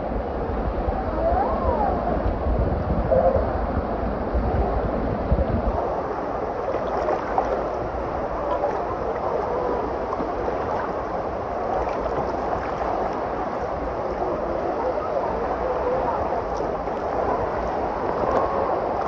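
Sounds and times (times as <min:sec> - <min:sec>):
water sloshing and splashing: 0:05.7 - 0:19.0.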